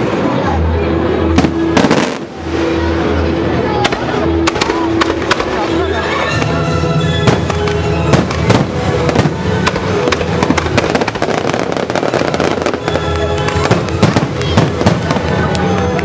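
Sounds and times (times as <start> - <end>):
fireworks bangs and crackles: 0.0 - 16.0
loud recorded music: 0.0 - 16.0.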